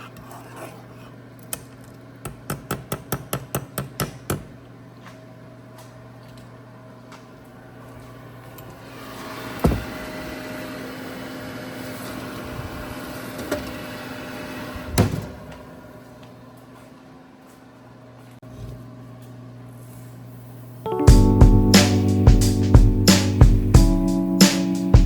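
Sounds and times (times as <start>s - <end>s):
kitchen appliance humming and whirring: 4.7s - 20.6s.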